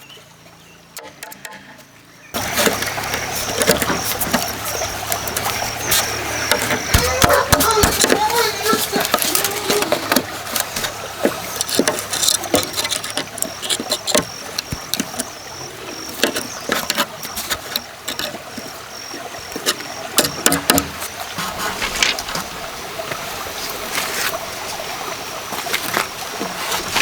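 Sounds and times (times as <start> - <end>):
bamboo knocking and clattering: 2.4 - 22.5.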